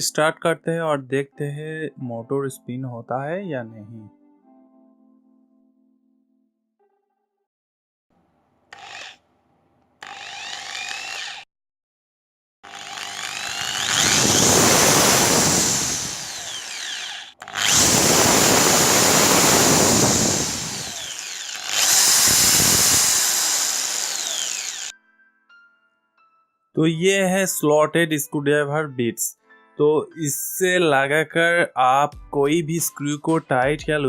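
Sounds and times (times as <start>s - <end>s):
hammer drill motor running: 8.7s - 9.2s, 10.0s - 11.5s, 12.6s - 24.9s.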